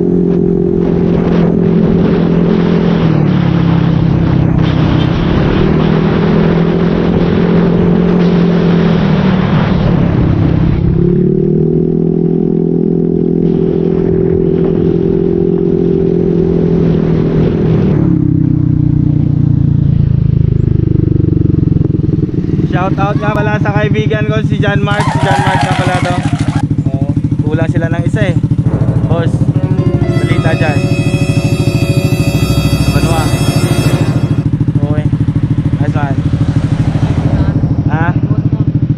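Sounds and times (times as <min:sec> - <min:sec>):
wind rush over microphone: 0:00.0 - 0:11.8
motorcycle engine revving: 0:00.0 - 0:38.9.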